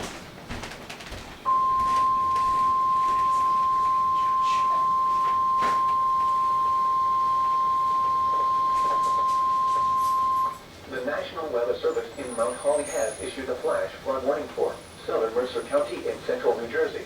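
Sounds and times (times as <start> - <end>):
steady alarm beep: 1.5 - 10.6.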